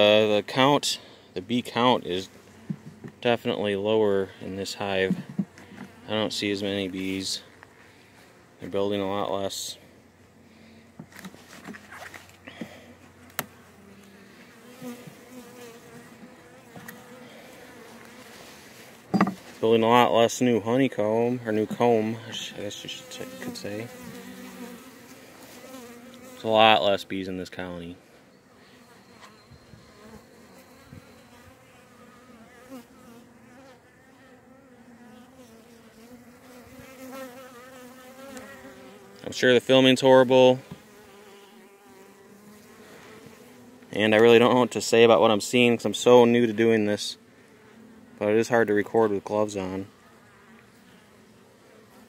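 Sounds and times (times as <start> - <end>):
honeybees buzzing: 1.6 - 27.7, 28.3 - 52.0
faint knocks: 19.1 - 19.5.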